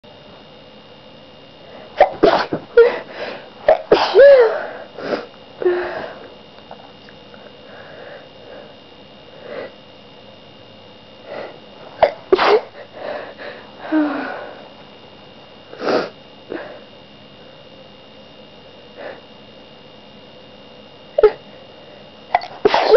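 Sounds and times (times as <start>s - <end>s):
person sneezing: 2.0s - 3.1s, 3.7s - 5.3s, 12.0s - 12.8s, 22.3s - 22.9s.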